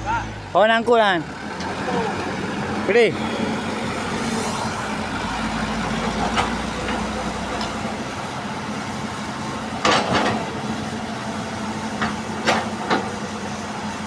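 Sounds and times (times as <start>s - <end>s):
excavator engine humming: 0.0s - 14.0s.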